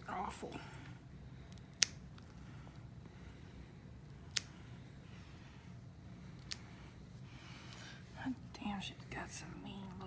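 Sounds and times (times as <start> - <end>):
nail clippers snipping claws: 1.5 - 2.0, 4.3 - 4.5, 6.4 - 6.6.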